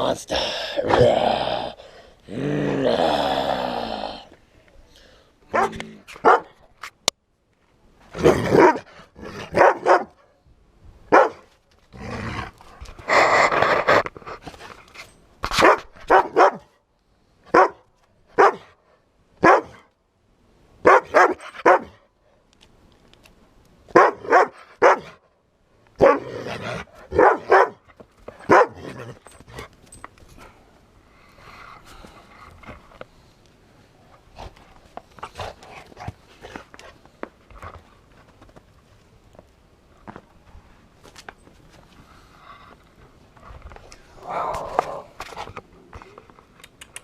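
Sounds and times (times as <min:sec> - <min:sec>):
dog barking in play: 0:05.5 - 0:06.6, 0:08.2 - 0:10.2, 0:11.1 - 0:11.4, 0:15.6 - 0:16.7, 0:17.5 - 0:17.8, 0:18.4 - 0:18.7, 0:19.4 - 0:19.8, 0:20.8 - 0:22.0, 0:23.9 - 0:25.2, 0:26.0 - 0:26.4, 0:27.1 - 0:27.8, 0:28.4 - 0:29.1.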